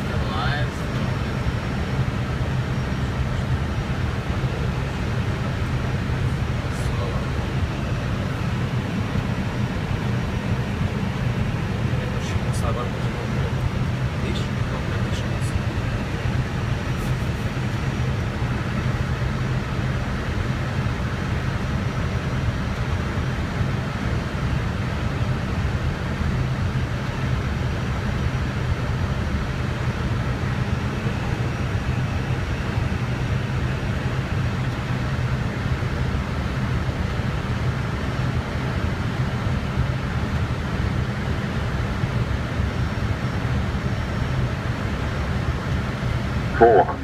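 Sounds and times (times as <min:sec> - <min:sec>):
low cockpit hum: 0:00.0 - 0:39.7, 0:40.3 - 0:47.0.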